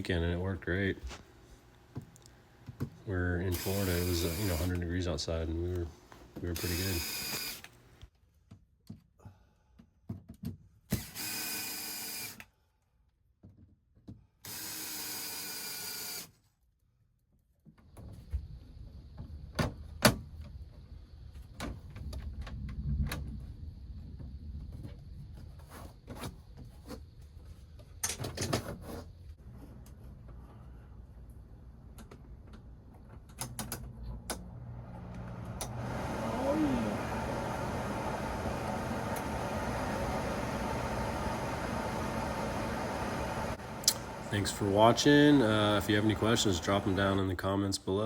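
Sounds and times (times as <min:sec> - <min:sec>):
power drill running: 0:03.4 - 0:04.8, 0:06.5 - 0:07.8, 0:10.9 - 0:12.4, 0:14.5 - 0:16.3, 0:35.1 - 0:47.3
low steady hum: 0:33.9 - 0:47.9.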